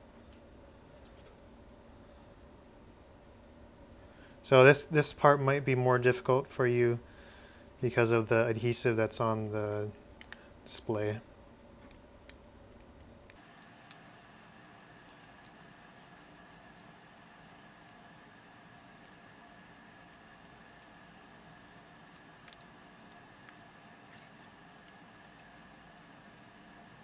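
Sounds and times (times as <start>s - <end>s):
low hiss with high tone: 13.4s - 27.0s
plastic parts clicking: 19.0s - 27.0s.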